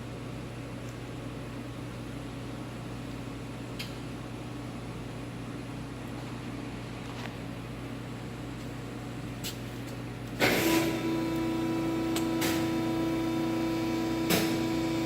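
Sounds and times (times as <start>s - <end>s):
machine humming and whining: 0.0s - 15.0s.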